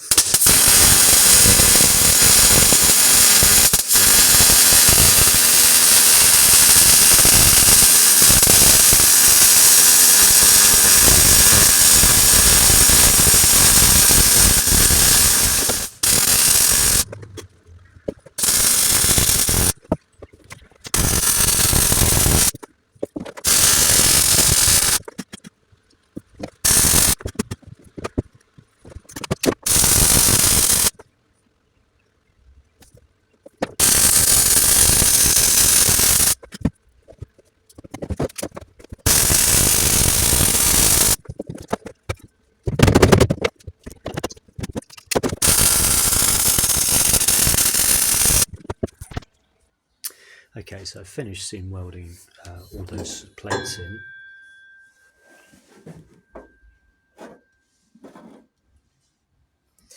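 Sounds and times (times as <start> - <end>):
welding arc crackling: 0.0 - 20.1, 20.7 - 25.5, 26.2 - 31.0, 33.5 - 49.3.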